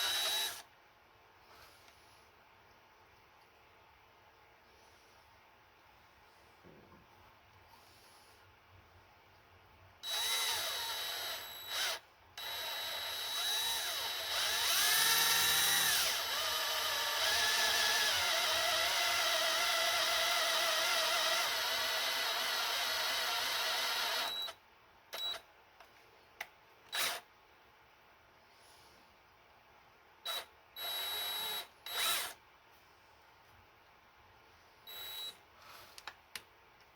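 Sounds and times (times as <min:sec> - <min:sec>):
power drill boring metal: 0:00.0 - 0:00.6, 0:10.0 - 0:24.5, 0:27.0 - 0:27.2, 0:30.3 - 0:32.4.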